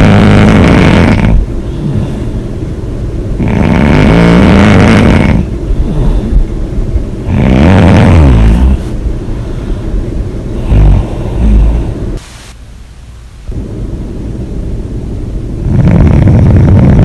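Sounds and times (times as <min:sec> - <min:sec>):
person snoring loudly: 0:00.0 - 0:02.2, 0:03.4 - 0:06.3, 0:07.2 - 0:08.9, 0:10.6 - 0:12.0, 0:15.6 - 0:17.0
soft breaths: 0:00.0 - 0:02.8, 0:05.0 - 0:06.7, 0:08.1 - 0:12.2.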